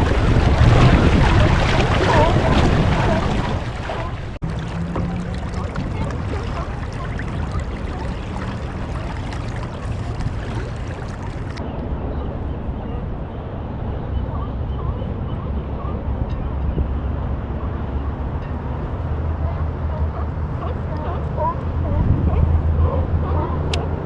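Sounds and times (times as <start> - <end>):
water sloshing around kayak: 0.0 - 11.6
wind rumbling on microphone: 0.0 - 24.0.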